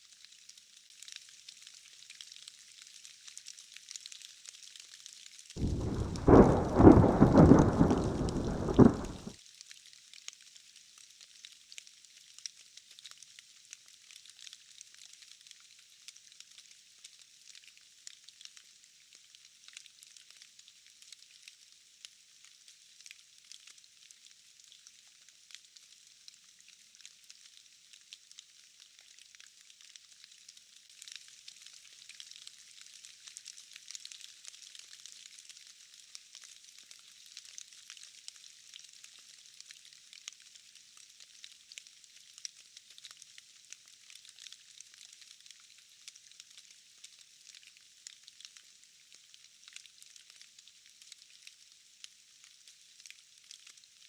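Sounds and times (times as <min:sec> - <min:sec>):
light rain hiss and patter: 0:00.0 - 0:54.0
heavy rain: 0:05.6 - 0:09.3
thunder rumbling: 0:05.6 - 0:09.3.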